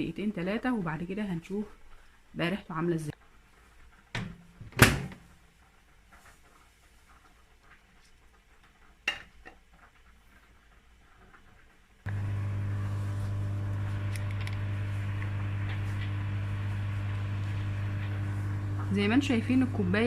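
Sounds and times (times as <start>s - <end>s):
microwave humming: 12.1s - 20.0s.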